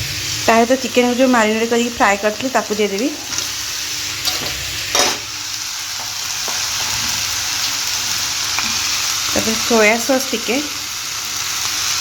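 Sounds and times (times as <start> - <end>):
food sizzling in oil: 0.0 - 12.0
spatula scraping pan: 2.8 - 5.3.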